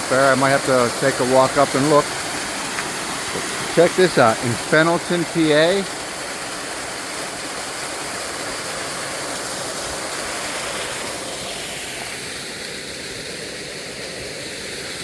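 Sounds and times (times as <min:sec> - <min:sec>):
small waterfall pouring: 0:00.0 - 0:15.0.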